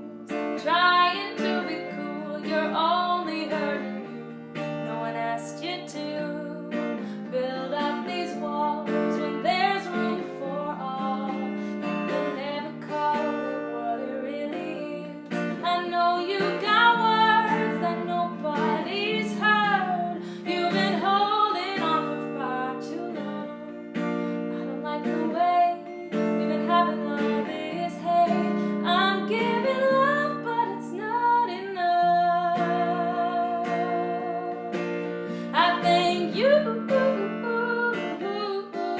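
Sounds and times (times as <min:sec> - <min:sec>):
strummed acoustic guitar: 0:00.0 - 0:38.9
woman singing: 0:00.0 - 0:38.9.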